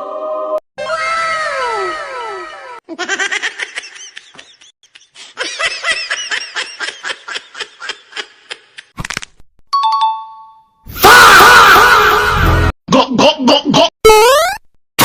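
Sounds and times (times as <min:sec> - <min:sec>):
laughing sound effect: 0:11.1 - 0:14.6
tones sliding down in pitch: 0:14.0 - 0:14.7.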